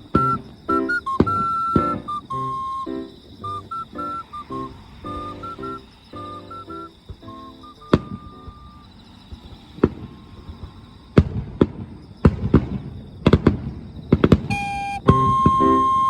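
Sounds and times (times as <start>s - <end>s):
music: 0.0s - 8.7s, 14.5s - 16.0s
fireworks cracking and popping: 9.3s - 15.3s.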